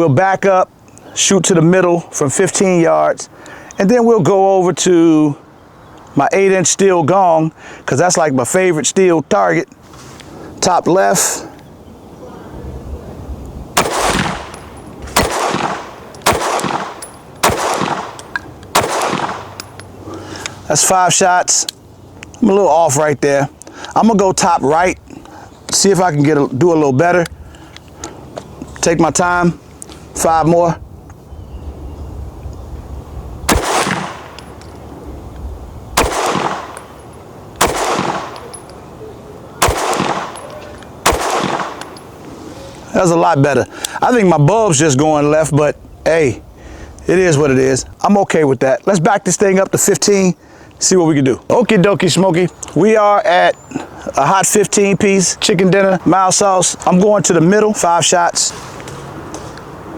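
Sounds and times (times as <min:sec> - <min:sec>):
pistol shots with echo: 0:13.8 - 0:19.7, 0:33.5 - 0:34.6, 0:36.0 - 0:37.0, 0:37.6 - 0:38.6, 0:39.6 - 0:42.0.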